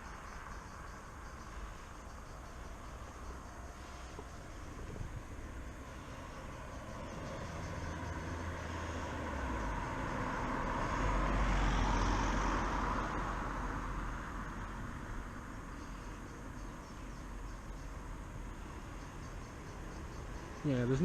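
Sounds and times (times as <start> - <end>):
motor vehicle passing: 1.1 - 16.6.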